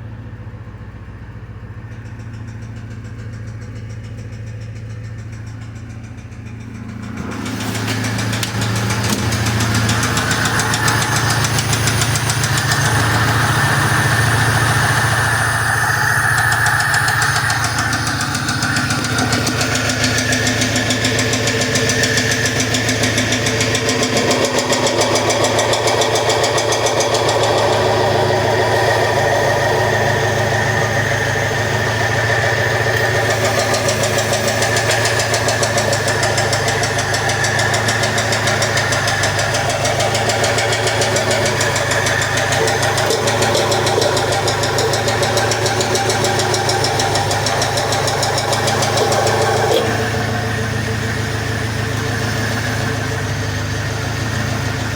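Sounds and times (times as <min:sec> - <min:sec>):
engine running with rapid knock: 0:00.0 - 0:54.9.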